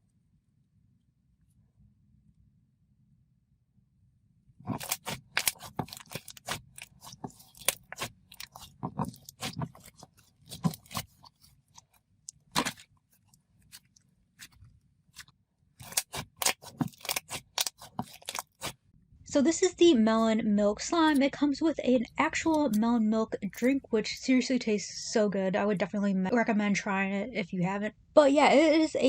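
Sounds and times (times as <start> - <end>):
slime squishing and popping: 4.7 - 13.0, 15.2 - 18.8.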